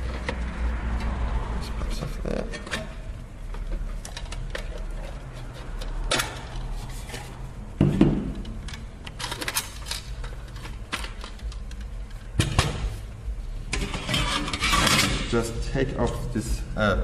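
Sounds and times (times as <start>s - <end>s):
clicks and clatter of small parts: 8.4s - 12.8s.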